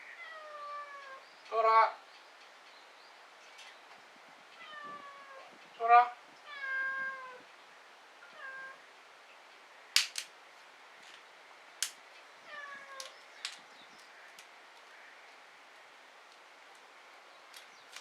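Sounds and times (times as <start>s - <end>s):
cat meowing: 4.6s - 5.5s, 6.5s - 7.4s, 8.3s - 8.8s, 12.5s - 13.1s
firewood popping: 10.0s - 10.3s, 13.0s - 14.9s.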